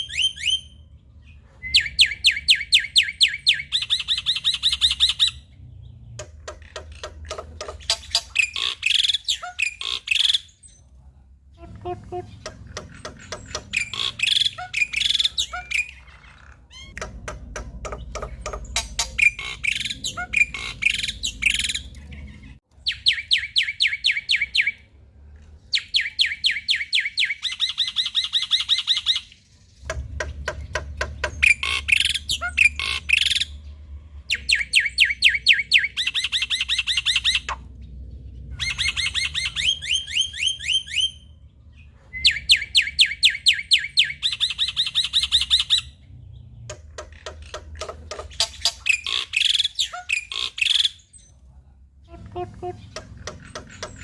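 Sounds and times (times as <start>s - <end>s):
bird singing chattering notes: 11.6s - 24.8s, 25.8s - 33.7s, 52.1s - 54.0s.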